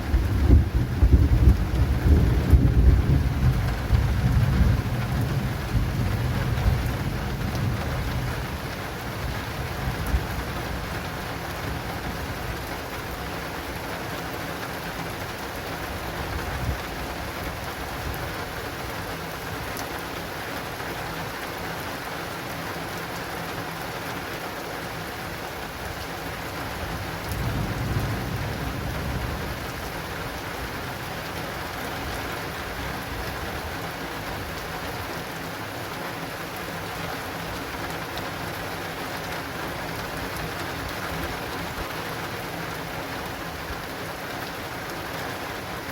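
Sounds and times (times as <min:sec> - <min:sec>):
low rumble of thunder: 0:00.0 - 0:13.2, 0:26.7 - 0:34.5
heavy rain on an awning: 0:00.0 - 0:45.9.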